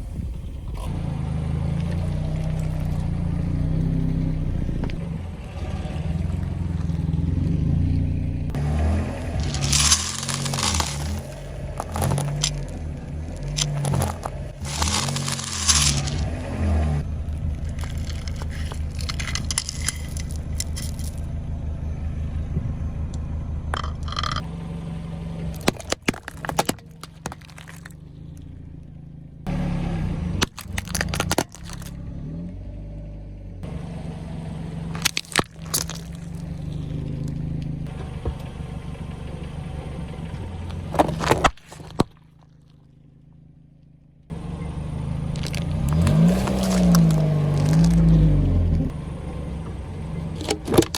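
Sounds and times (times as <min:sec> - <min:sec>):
car engine running slowly: 0:00.0 - 0:50.9
tyres crushing things: 0:01.9 - 0:05.0, 0:06.3 - 0:21.3, 0:25.5 - 0:28.4, 0:30.4 - 0:32.0, 0:34.9 - 0:36.9, 0:40.7 - 0:42.8, 0:45.4 - 0:48.8, 0:50.1 - 0:50.9.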